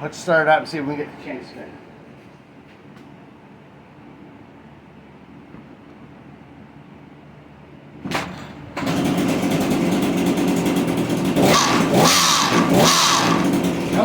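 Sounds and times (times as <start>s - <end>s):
small two-stroke engine running: 8.8s - 14.0s.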